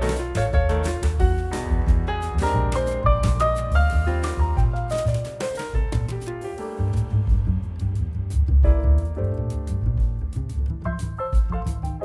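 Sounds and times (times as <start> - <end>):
steady beat: 0.0 - 12.0
strong bass line: 0.0 - 12.0.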